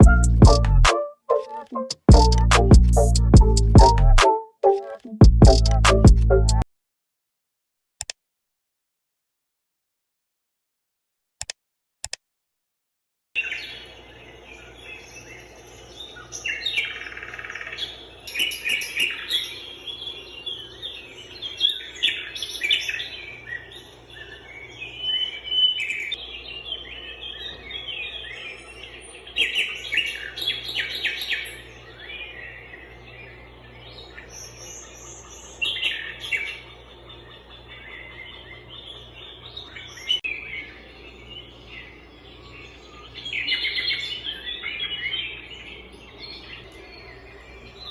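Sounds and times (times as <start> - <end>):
faint steady low hum: 13.4 - 47.9
songbirds chirping and trilling: 13.4 - 47.9.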